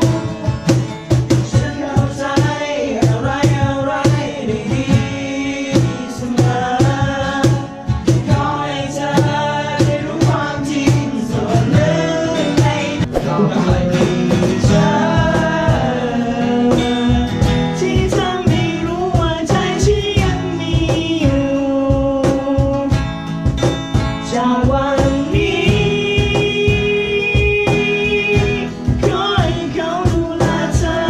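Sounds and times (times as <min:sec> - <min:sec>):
guitar: 0:00.0 - 0:31.0
steady drum beat: 0:13.1 - 0:31.0.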